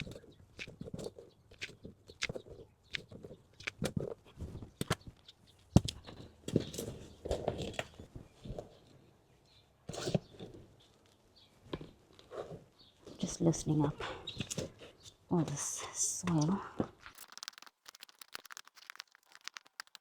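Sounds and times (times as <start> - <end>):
hands scraping potting soil: 17.1 - 20.0.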